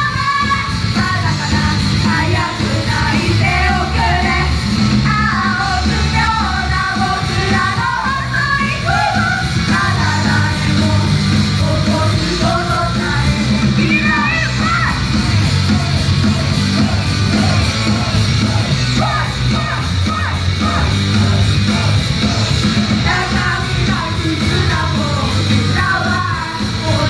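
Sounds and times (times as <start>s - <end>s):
live rock band: 0.0s - 27.0s
person singing: 0.0s - 27.0s
shouted voices: 5.2s - 10.4s, 12.3s - 27.0s.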